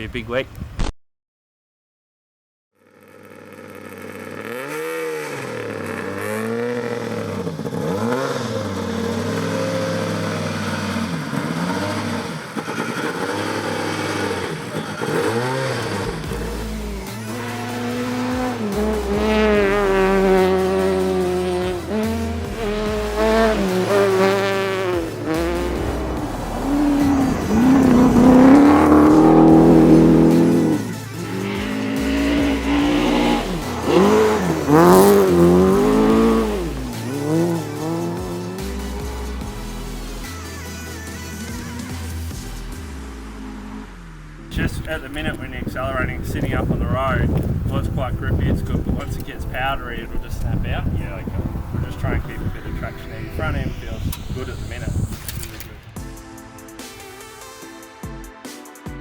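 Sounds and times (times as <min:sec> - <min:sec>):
rally car engine revving: 0:02.9 - 0:55.8
tyres on gravel: 0:03.2 - 0:39.1.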